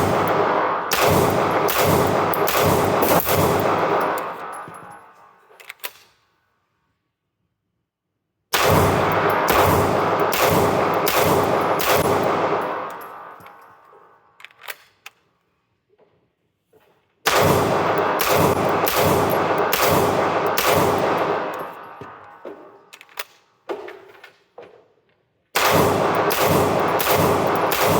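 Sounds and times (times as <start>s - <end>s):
rapid pistol shots echoing: 0.0s - 5.1s, 8.5s - 13.6s, 17.3s - 22.8s, 25.6s - 27.9s.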